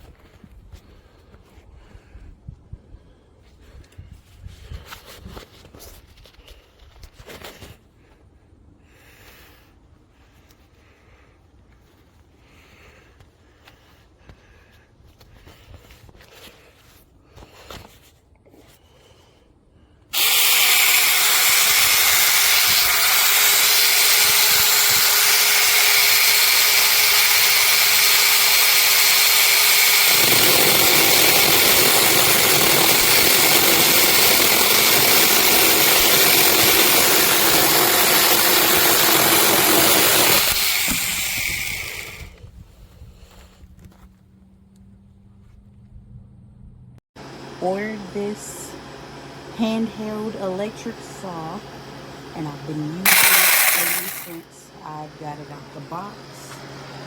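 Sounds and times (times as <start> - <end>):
mini chainsaw running: 20.1 - 42.4, 52.4 - 56.5.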